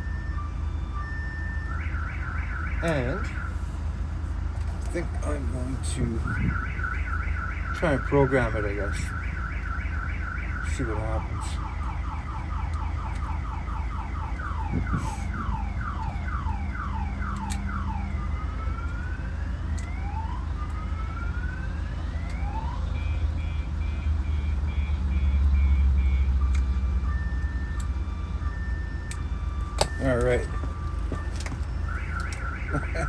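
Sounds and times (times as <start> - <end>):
car alarm siren: 0.0 - 33.0.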